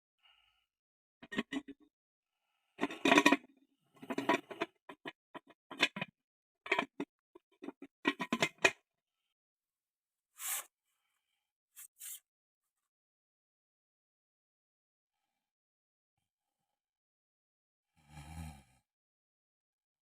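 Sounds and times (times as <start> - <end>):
brief hiss: 10.4 - 10.7
rustling and handling noises: 10.4 - 10.7, 11.8 - 12.2
short scrapes and clicks: 10.4 - 10.7, 11.8 - 12.2.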